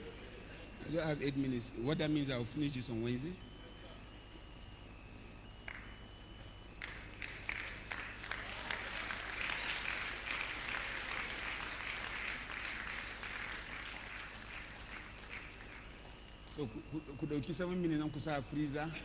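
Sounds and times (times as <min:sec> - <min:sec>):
congregation clapping: 0:05.6 - 0:05.9, 0:06.8 - 0:16.6.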